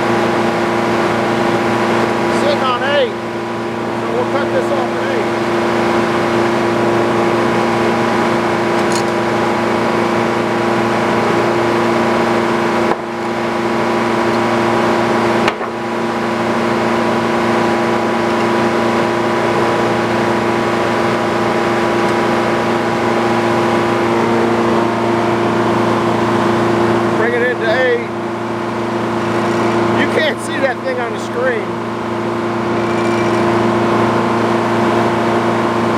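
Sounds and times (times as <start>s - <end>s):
sawmill engine running: 0.0s - 35.9s.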